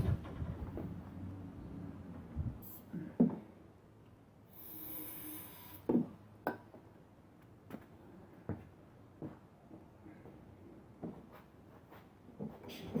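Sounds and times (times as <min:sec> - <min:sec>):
aerosol can hiss: 0:04.5 - 0:05.8.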